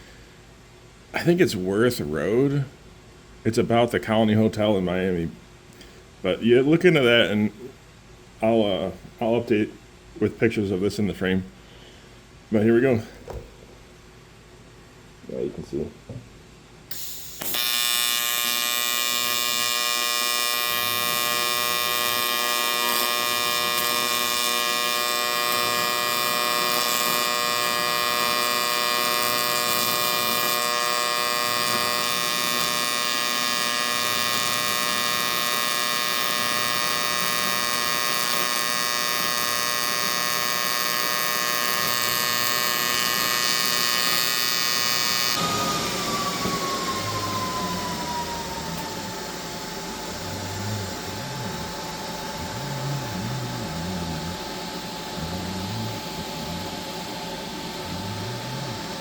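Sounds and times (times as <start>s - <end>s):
welding arc electric buzz: 16.9s - 59.0s
whine falling in pitch: 17.4s - 59.0s.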